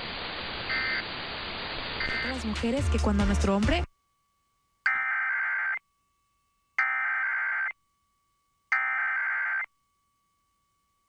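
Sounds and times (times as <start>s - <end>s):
warbling digital data tones: 2.0s - 2.4s
faint steady tone: 3.9s - 11.0s.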